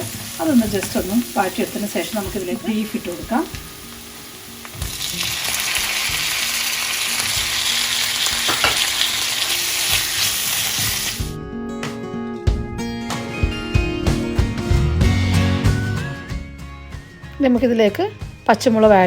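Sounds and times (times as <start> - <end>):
food sizzling in hot oil: 0.0 - 11.4
background music: 0.0 - 19.0.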